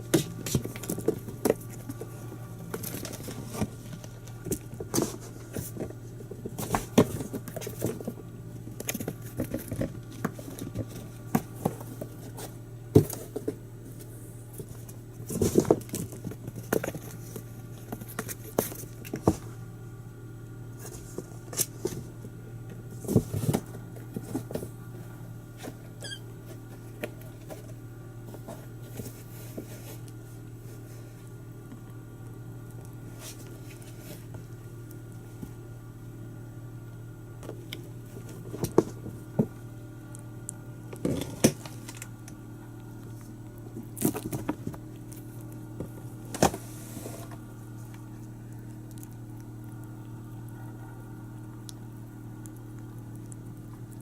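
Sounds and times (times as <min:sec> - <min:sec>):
kittens' paws pattering and thumping: 0:00.0 - 0:19.6, 0:20.6 - 0:31.9, 0:37.4 - 0:40.3, 0:40.9 - 0:50.0
steady low hum: 0:00.0 - 0:54.0.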